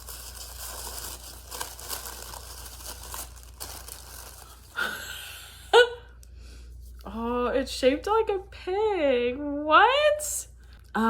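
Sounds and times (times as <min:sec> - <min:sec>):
wrapping crinkling and tearing: 0:00.0 - 0:05.0.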